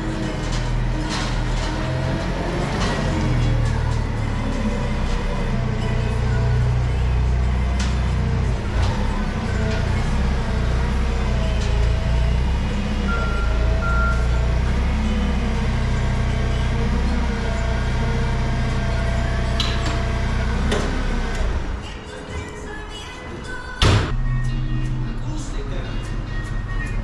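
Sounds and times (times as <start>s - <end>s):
truck engine and road noise: 0.0s - 27.0s.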